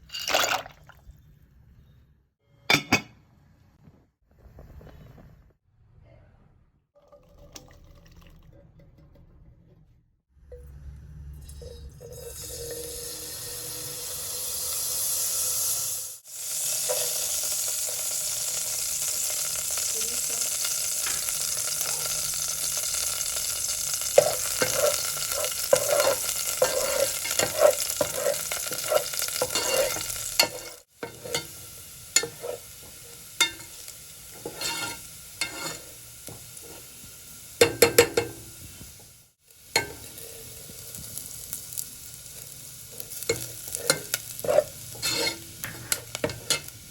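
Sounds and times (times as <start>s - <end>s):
food sizzling in hot oil: 12.2s - 46.9s
utensil stirring and knocking pan: 21.0s - 37.0s, 37.6s - 38.8s, 39.7s - 41.3s, 42.4s - 46.9s.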